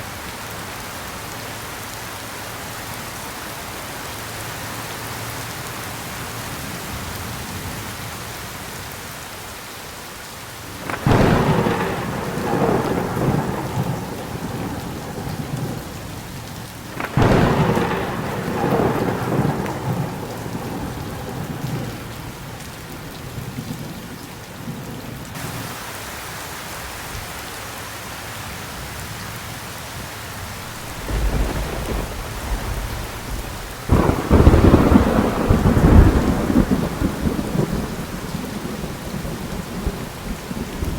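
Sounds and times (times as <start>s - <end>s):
heavy rain: 0.0s - 40.9s
thunder cracks and rumble: 10.8s - 22.6s, 30.6s - 40.9s.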